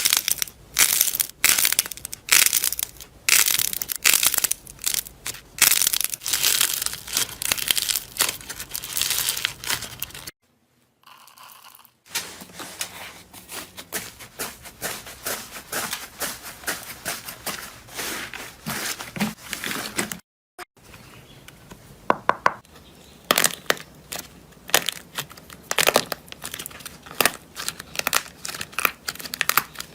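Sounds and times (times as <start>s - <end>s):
slime crackling as squeezed: 0.0s - 10.3s.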